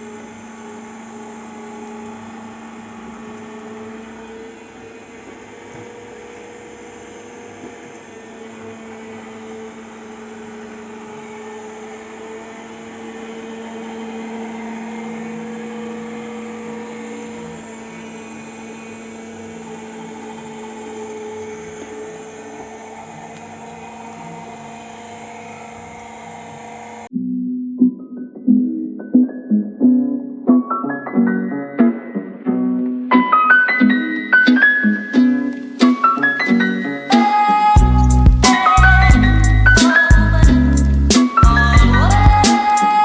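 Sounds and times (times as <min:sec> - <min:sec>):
robot vacuum cleaner hum: 0:00.0 - 0:27.1.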